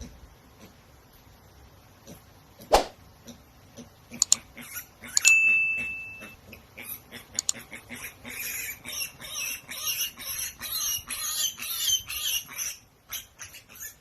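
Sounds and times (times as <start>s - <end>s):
small animal squeaking: 4.1s - 14.0s.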